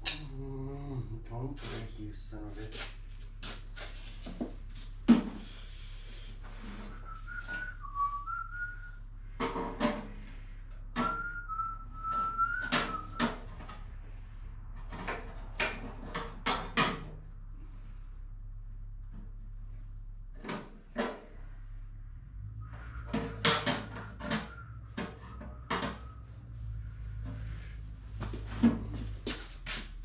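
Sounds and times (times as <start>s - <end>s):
low electrical hum: 0.0s - 30.0s
person whistling: 6.8s - 9.0s, 11.0s - 13.3s
metal knocking and clanking: 14.8s - 17.2s, 23.0s - 26.4s.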